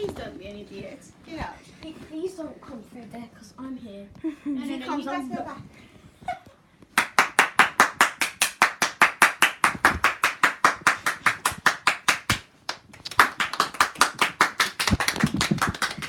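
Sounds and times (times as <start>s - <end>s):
hands clapping: 6.9s - 16.0s.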